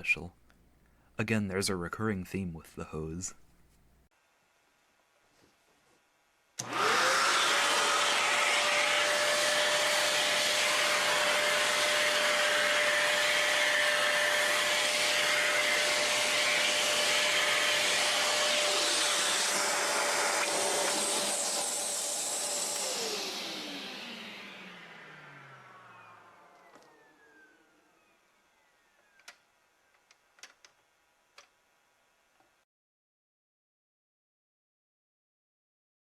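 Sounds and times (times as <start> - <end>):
vacuum cleaner motor whine: 6.6 - 30.1.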